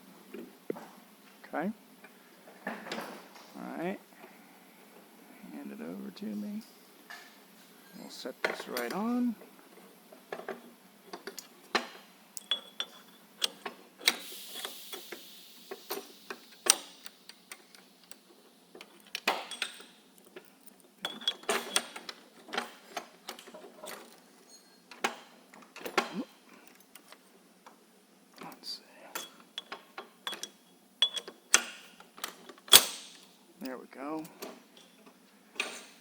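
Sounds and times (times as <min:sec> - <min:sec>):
metal parts clinking and knocking: 0:10.3 - 0:14.1, 0:15.7 - 0:27.2, 0:29.2 - 0:33.3, 0:34.2 - 0:36.0.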